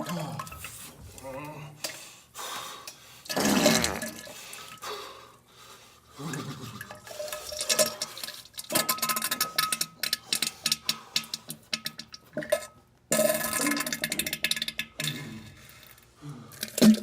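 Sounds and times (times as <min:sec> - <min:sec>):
toilet water gurgling and splashing: 0:03.3 - 0:04.9, 0:06.1 - 0:17.0.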